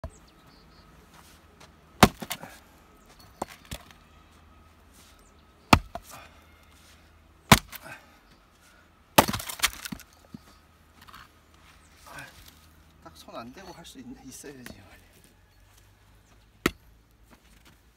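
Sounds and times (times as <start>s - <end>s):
axe chopping firewood: 2.0s - 2.6s, 3.4s - 3.9s, 5.7s - 6.2s, 7.4s - 8.0s, 9.1s - 10.1s, 16.6s - 16.8s.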